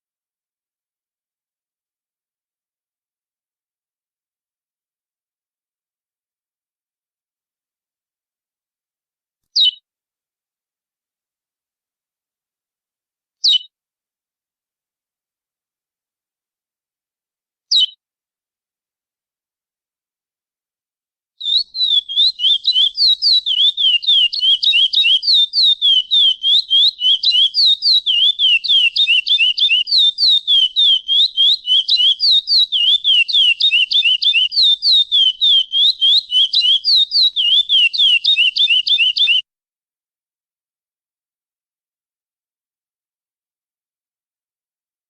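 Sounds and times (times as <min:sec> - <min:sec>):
finch chirping rapidly: 0:09.6 - 0:09.8, 0:13.4 - 0:13.7, 0:21.4 - 0:39.4.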